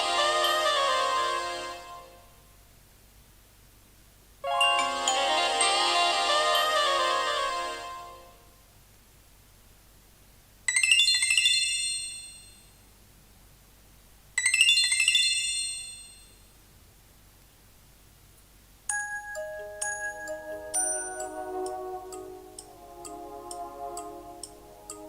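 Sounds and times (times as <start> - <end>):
bright phone chime: 4.4 - 5.9, 18.9 - 22.4.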